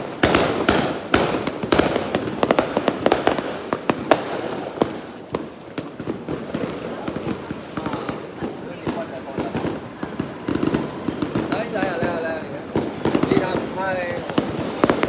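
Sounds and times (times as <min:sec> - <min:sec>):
fireworks cracking and banging: 0:00.0 - 0:15.0.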